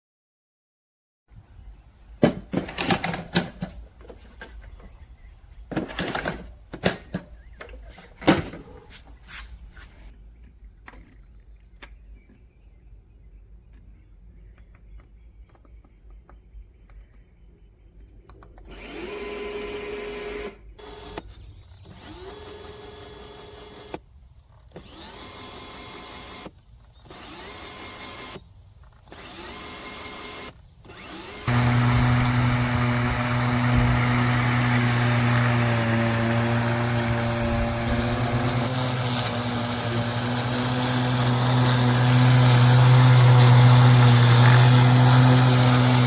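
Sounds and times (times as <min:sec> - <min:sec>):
lawn mower motor whine: 0:02.2 - 0:08.9, 0:18.6 - 0:46.0.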